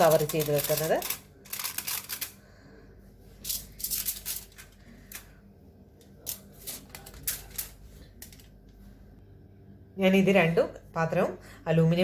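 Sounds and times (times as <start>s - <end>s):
aluminium foil crinkling: 0.0s - 2.4s, 3.4s - 5.3s, 6.2s - 8.6s.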